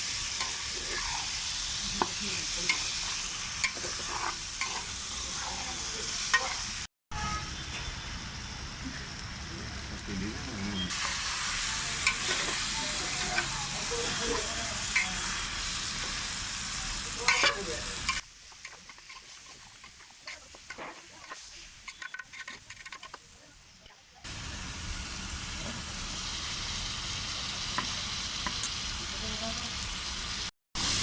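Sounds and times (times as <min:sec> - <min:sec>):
chicken sizzling in hot oil: 0:00.0 - 0:31.0
ladle scraping a pot: 0:03.6 - 0:04.9, 0:17.2 - 0:23.2.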